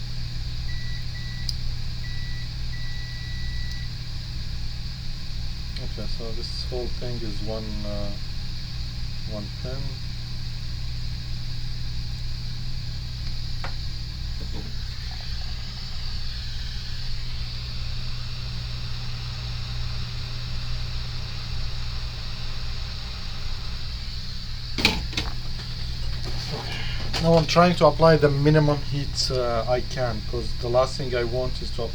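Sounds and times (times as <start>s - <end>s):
hot-air blower humming: 0.0s - 31.9s.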